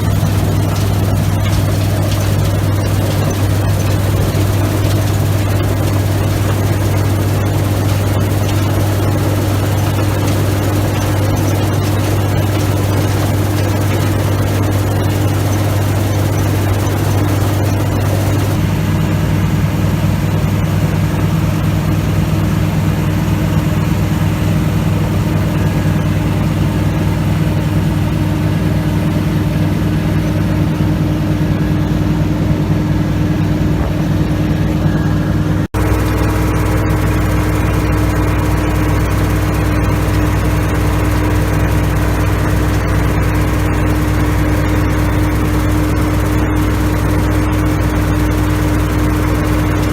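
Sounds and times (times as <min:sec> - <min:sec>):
diesel engine running loudly: 0:00.0 - 0:49.9.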